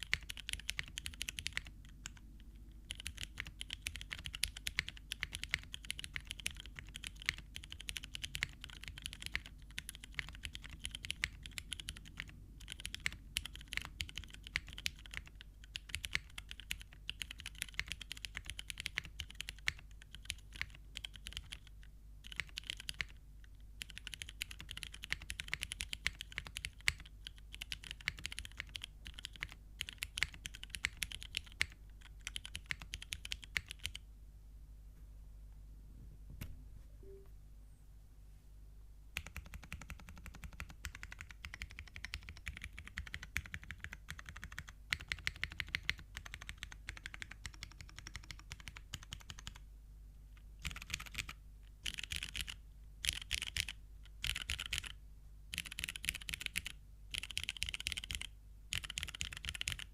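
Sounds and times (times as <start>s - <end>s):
mechanical keyboard typing: 0.0s - 2.2s, 2.9s - 23.2s, 23.8s - 34.0s, 39.2s - 49.6s, 50.6s - 59.9s.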